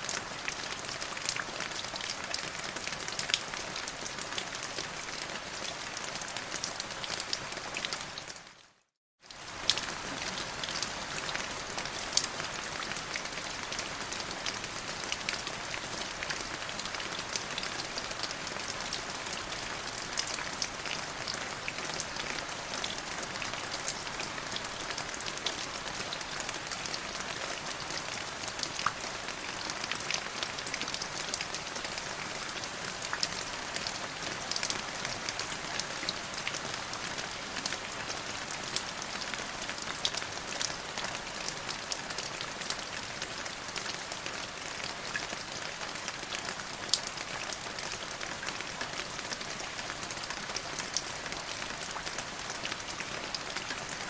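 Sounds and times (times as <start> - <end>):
rain drops on hard surface: 0.0 - 54.0.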